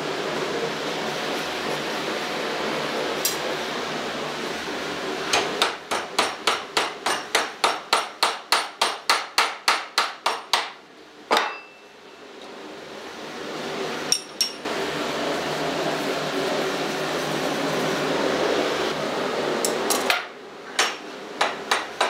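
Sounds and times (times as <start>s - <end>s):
hammer forging steel on an anvil: 5.3s - 11.8s, 20.8s - 22.0s.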